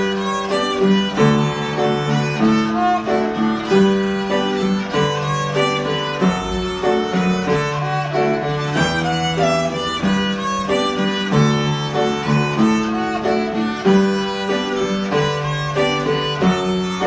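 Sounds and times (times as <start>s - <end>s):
lower-pitched accompaniment: 0.0s - 17.0s
violin playing lilting melody: 0.0s - 17.0s.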